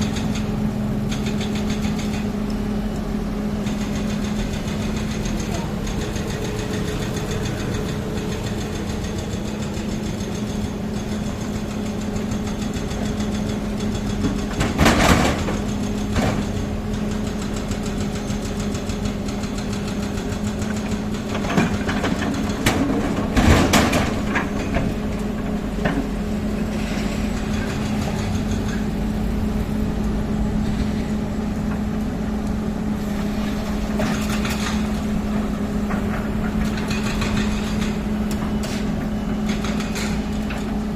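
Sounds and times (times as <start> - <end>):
heavy machine engine running: 0.0 - 40.9.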